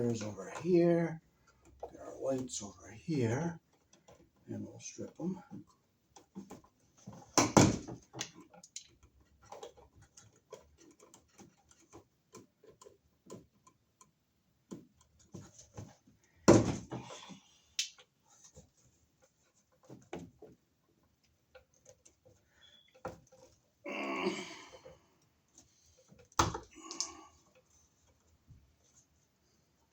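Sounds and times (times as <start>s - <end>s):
small clicks and handling noises: 8.0s - 16.4s, 17.6s - 23.8s.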